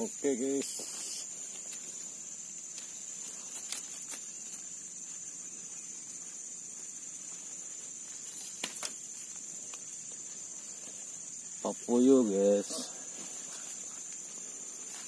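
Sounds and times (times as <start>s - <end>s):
insects chirring: 0.0s - 15.0s.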